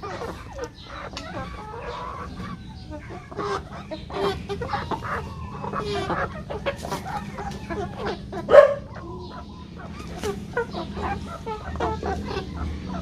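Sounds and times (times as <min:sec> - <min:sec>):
chickens clucking: 0:00.0 - 0:13.0.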